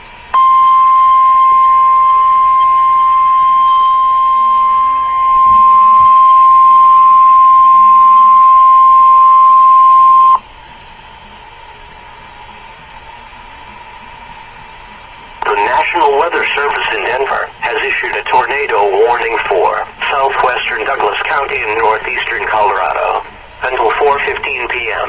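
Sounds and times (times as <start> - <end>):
loud high alert beep: 0.4 - 10.4
radio static hiss: 3.4 - 25.0.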